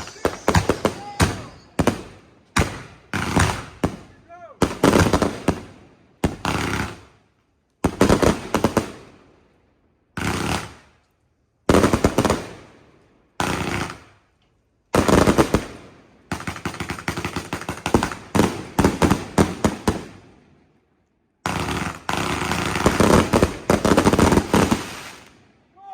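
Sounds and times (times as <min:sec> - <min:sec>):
fireworks bangs and popping: 0:00.0 - 0:07.2, 0:07.8 - 0:09.2, 0:10.2 - 0:10.9, 0:11.7 - 0:12.7, 0:15.0 - 0:20.3, 0:21.5 - 0:25.5.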